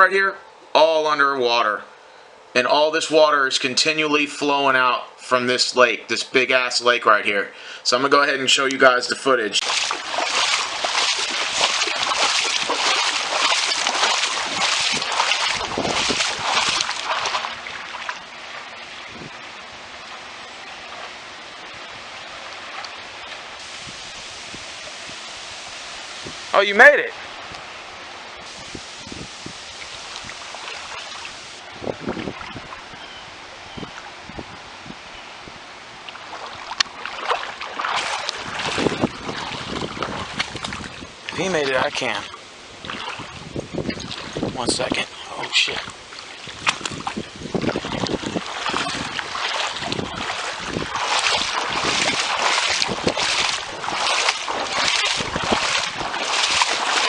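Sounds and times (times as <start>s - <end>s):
wind on microphone: 9.6s - 17.8s, 19.0s - 19.5s, 23.6s - 26.6s, 28.4s - 36.8s, 37.8s - 41.5s, 42.8s - 45.0s, 45.7s - 57.0s
wading through splashing water: 9.6s - 26.6s, 27.2s - 34.2s, 35.9s - 57.0s
floodwater rushing: 9.6s - 34.3s, 35.7s - 57.0s.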